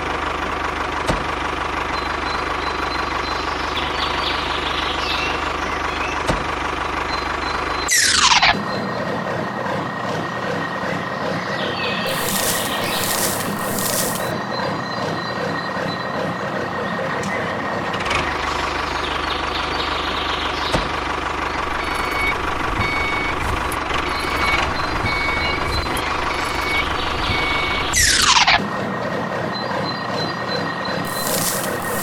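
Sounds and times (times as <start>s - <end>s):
short reversing beeps: 12.1s - 14.3s.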